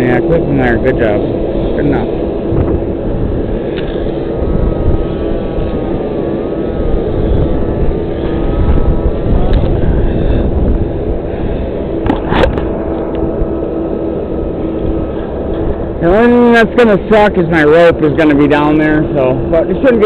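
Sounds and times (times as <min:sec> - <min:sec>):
crane engine running with whine: 0:00.0 - 0:20.0
wind rumbling on microphone: 0:00.0 - 0:20.0.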